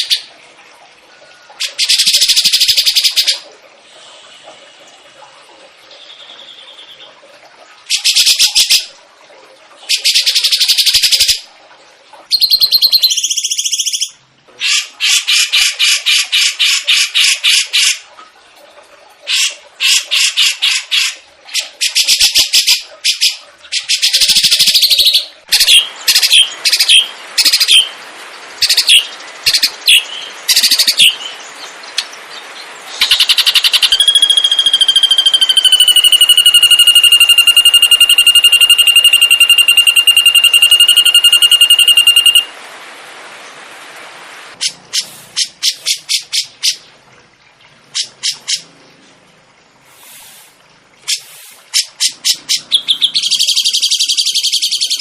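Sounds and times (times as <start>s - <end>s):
songbird trills and chirps: 12.3s - 14.2s, 32.9s - 42.5s, 52.0s - 55.0s
long steady whistled tone: 33.6s - 42.5s.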